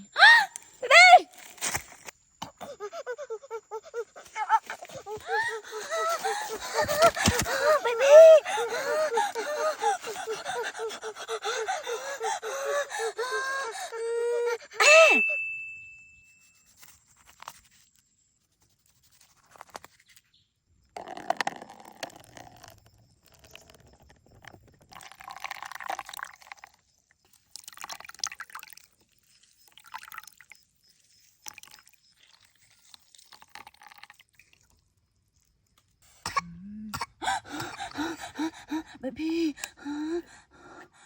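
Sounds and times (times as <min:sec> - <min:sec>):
liquid being poured: 0:21.0 - 0:35.5.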